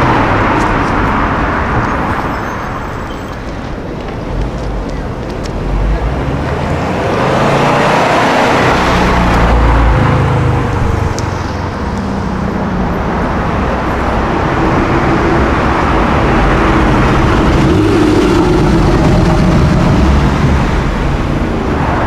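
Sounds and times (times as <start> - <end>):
street traffic: 0.0 - 22.0
tyre and road noise: 0.0 - 22.0
car engine running: 3.1 - 22.0.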